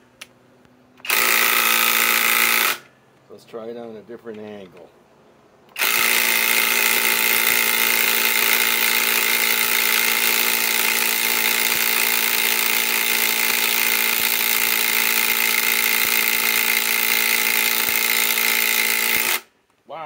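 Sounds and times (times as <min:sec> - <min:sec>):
impact wrench hammering bolt in wood: 0:01.0 - 0:02.9, 0:05.7 - 0:19.5.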